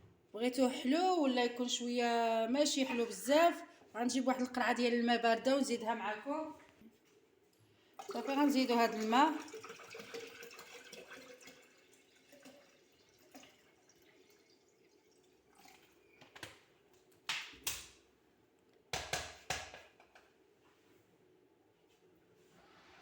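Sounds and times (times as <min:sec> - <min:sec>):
kitchen vessels knocking and clinking: 0:02.7 - 0:03.4
water trickling: 0:08.0 - 0:16.2.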